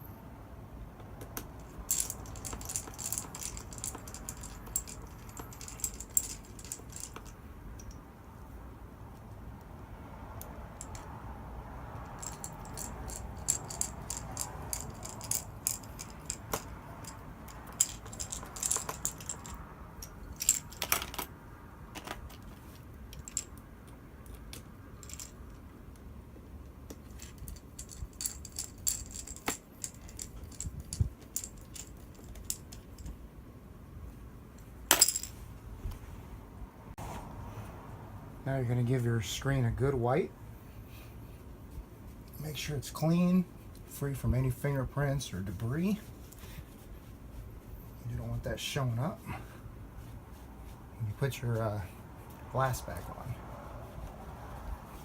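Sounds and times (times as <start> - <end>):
clicks and metallic rattles of screws: 1.3 - 8.0, 12.1 - 25.7, 26.8 - 33.2, 34.9 - 35.4.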